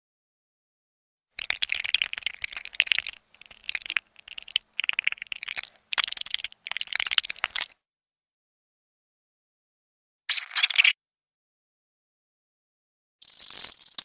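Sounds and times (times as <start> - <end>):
rapid crackling insect clicks: 1.4 - 7.8, 13.2 - 14.0.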